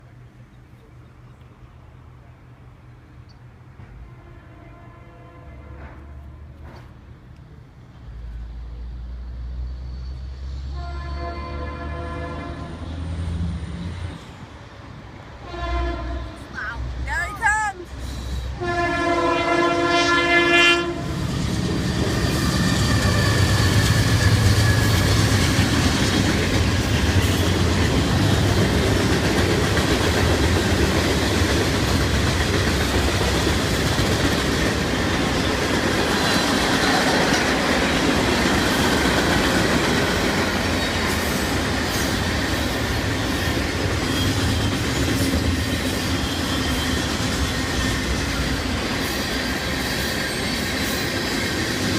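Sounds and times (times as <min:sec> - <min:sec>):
train rumbling past: 0:00.0 - 0:51.9
locomotive air horn chord: 0:04.0 - 0:06.2, 0:10.7 - 0:12.9, 0:15.4 - 0:16.4, 0:18.5 - 0:21.2
wheels clacking over rail joints: 0:21.4 - 0:51.9.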